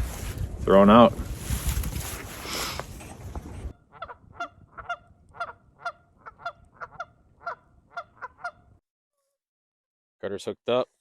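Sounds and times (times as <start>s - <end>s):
geese honking: 3.8s - 8.8s.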